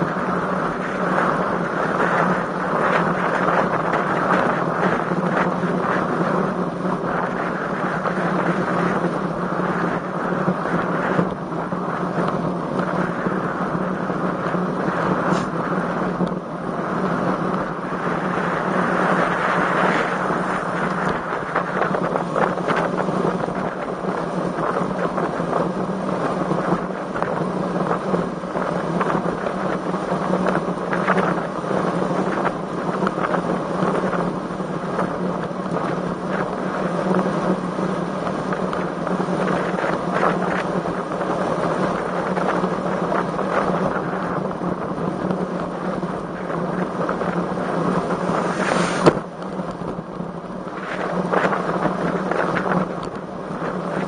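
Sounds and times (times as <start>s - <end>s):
wind rushing over microphone: 0.0s - 54.0s.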